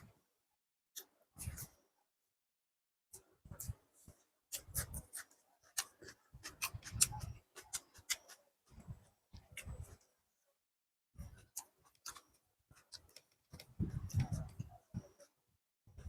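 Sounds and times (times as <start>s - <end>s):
close chewing with lip smacks: 4.5s - 8.4s, 11.3s - 15.3s.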